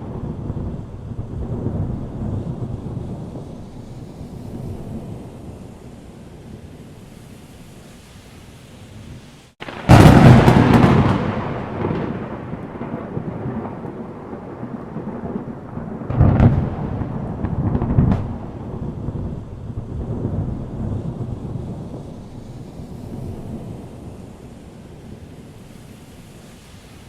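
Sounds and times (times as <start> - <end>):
thunderclap and rumbling thunder: 0.0 - 5.9, 9.6 - 25.5
rain and wind hiss: 0.0 - 27.0.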